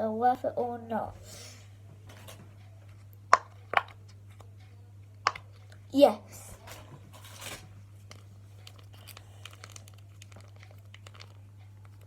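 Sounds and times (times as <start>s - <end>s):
steady low hum: 0.0s - 12.0s
plastic toys clicking and crinkling: 6.5s - 12.0s.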